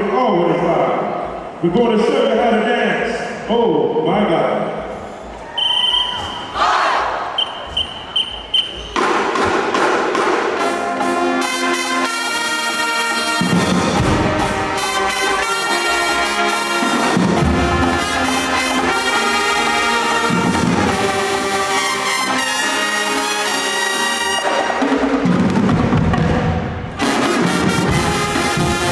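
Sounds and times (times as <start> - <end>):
marching band brass playing: 5.6 - 28.9
low brass notes: 10.3 - 25.5, 26.9 - 28.9.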